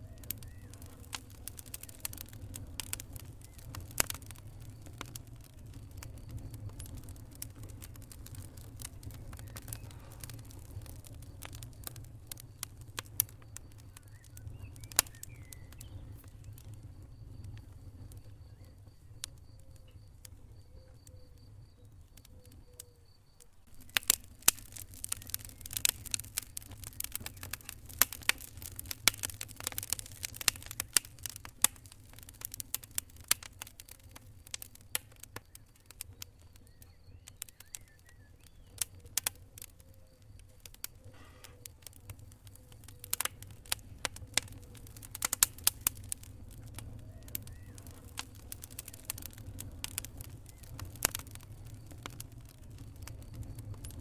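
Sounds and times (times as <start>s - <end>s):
wood fire crackling and popping: 0.0s - 54.0s.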